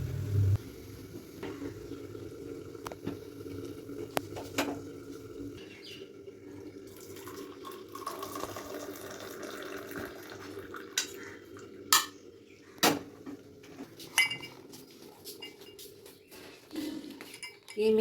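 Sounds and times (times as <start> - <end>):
steady low hum: 0.0 - 2.1
dishes and utensils clattering: 10.9 - 11.3, 11.9 - 18.0.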